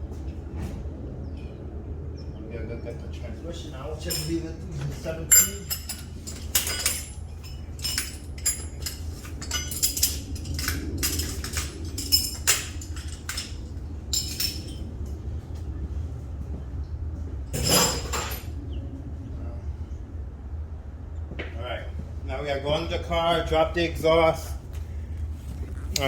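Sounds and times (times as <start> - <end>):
steady low hum: 0.0 - 26.0
metal hand tools clinking: 4.0 - 14.8, 17.6 - 18.5.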